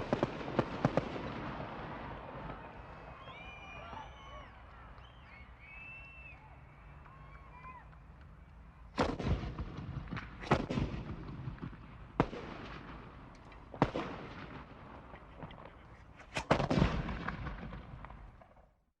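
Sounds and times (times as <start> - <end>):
gunshots with echo: 0.0 - 2.8, 9.0 - 18.5.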